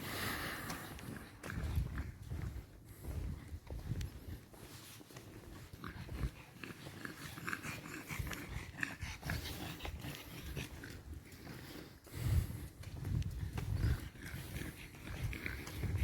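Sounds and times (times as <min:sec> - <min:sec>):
dog sounds: 0:04.8 - 0:12.2, 0:13.4 - 0:16.0.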